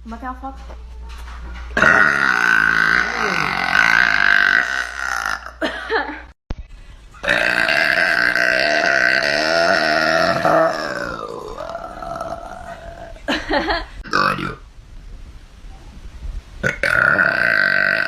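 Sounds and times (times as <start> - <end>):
woman burping: 1.8 - 6.1, 7.2 - 13.4, 16.7 - 18.0.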